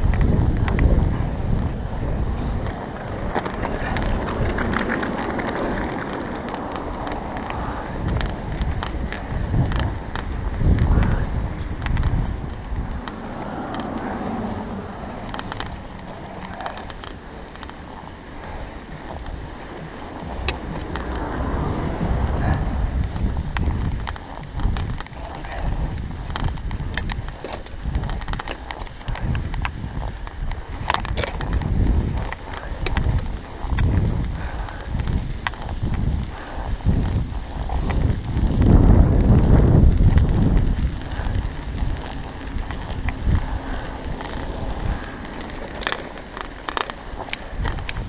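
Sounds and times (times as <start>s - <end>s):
bicycle riding through snow: 0.0s - 48.0s
bike clicks and rattles: 0.0s - 48.0s
wind rumbling on microphone: 0.0s - 48.0s.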